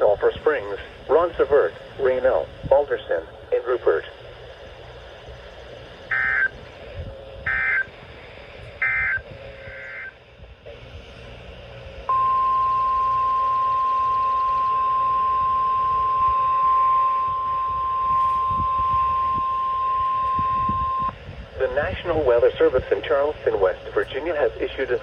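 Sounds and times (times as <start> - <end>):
steady alarm tone: 0.8 - 6.7, 7.4 - 10.8, 12.0 - 21.2
warbling data tone bursts: 5.0 - 6.6, 7.4 - 8.0, 8.7 - 10.2, 12.1 - 21.2.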